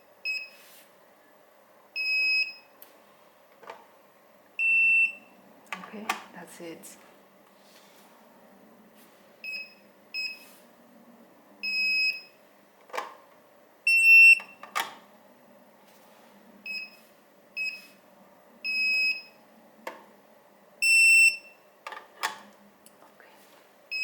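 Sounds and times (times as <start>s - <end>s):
short keypad beeps: 4.6s - 5.2s
loud high pager beep: 13.9s - 14.6s, 20.8s - 21.6s.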